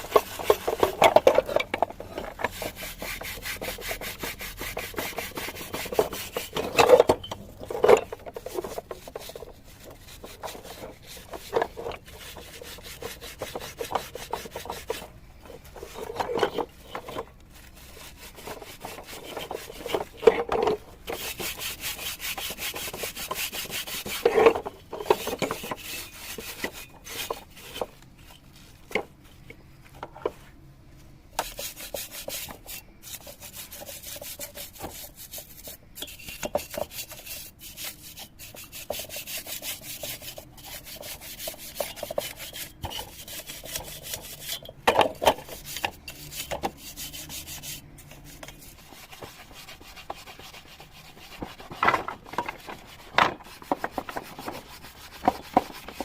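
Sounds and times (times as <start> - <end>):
abrasive tool rubbing metal part: 2.4 - 15.1, 15.7 - 20.5, 21.1 - 27.9, 31.4 - 51.6.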